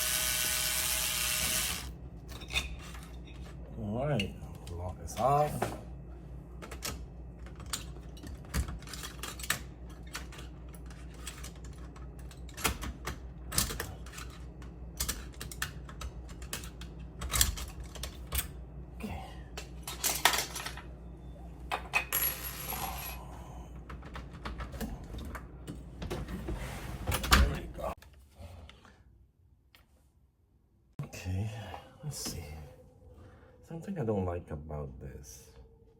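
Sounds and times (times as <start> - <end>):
metal parts clicking and clinking: 6.6 - 12.8.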